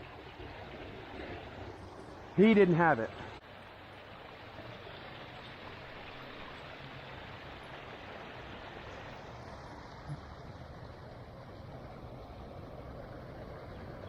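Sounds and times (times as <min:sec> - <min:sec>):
floodwater rushing: 0:00.0 - 0:14.0.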